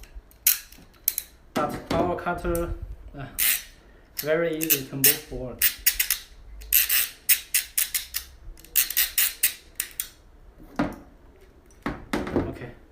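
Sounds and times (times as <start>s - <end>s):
ratchet cable cutter clicking: 0.0s - 1.4s, 3.4s - 10.2s.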